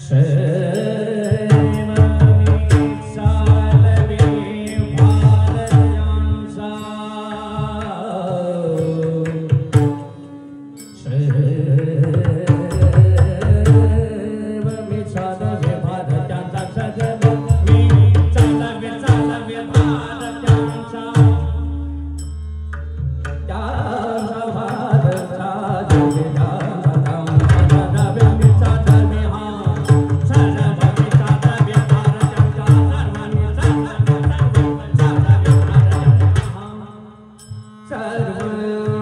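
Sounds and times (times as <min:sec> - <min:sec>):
devotional singing: 0:00.0 - 0:10.2, 0:11.0 - 0:22.0, 0:23.5 - 0:39.0.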